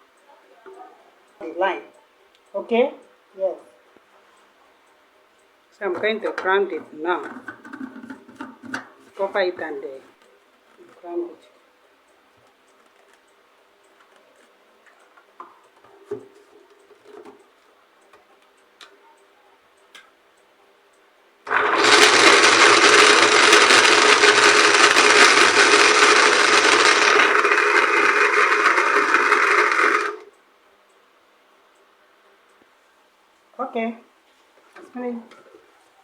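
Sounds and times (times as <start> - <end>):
electric blender grinding: 21.5 - 30.3.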